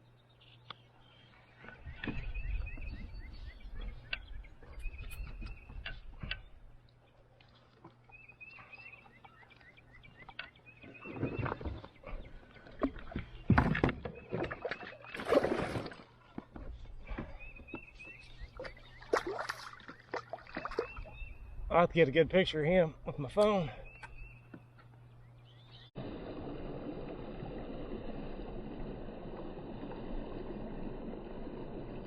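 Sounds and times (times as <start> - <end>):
songbird singing: 0.0 - 15.6, 16.6 - 26.0
knocks and rustling in a kayak: 1.6 - 6.6, 10.2 - 21.2.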